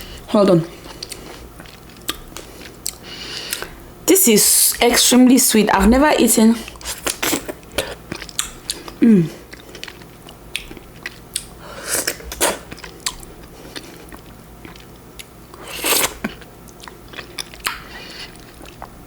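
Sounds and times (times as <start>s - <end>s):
wet chewing of fruit: 0.7s - 3.8s, 6.6s - 19.0s
person humming mm: 9.0s - 9.4s.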